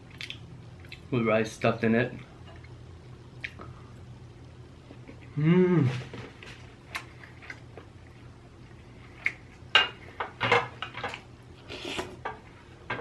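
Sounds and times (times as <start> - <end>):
chewing: 6.8 - 9.6.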